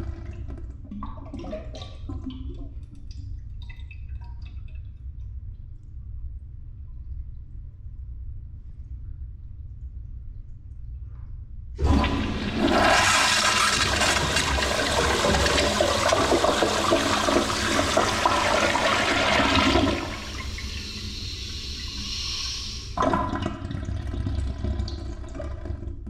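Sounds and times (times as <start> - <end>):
toilet flushing: 0.0 - 2.8, 11.8 - 26.0
running water hiss: 17.5 - 23.0.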